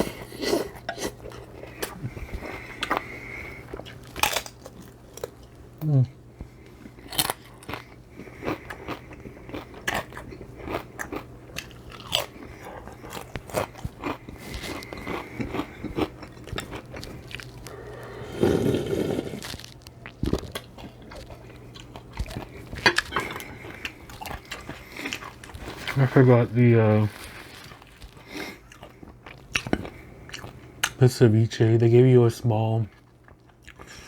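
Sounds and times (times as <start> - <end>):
wet chewing and biting: 0.0 - 5.6, 6.5 - 26.0, 27.2 - 31.0.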